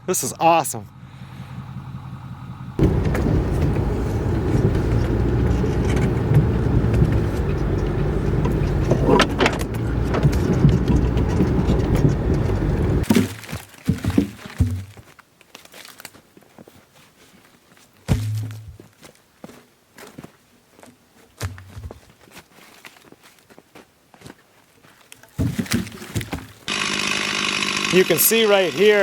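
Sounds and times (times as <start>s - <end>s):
vehicle engine rumbling: 0.0s - 13.1s, 26.7s - 29.0s
thumps: 1.5s - 15.0s, 18.1s - 18.8s
rattles and knocks: 2.8s - 15.0s.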